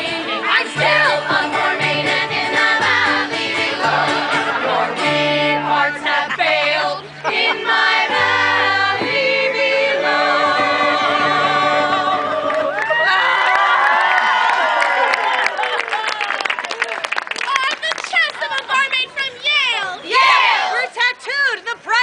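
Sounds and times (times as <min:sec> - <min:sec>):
group singing in harmony: 0:00.0 - 0:12.9.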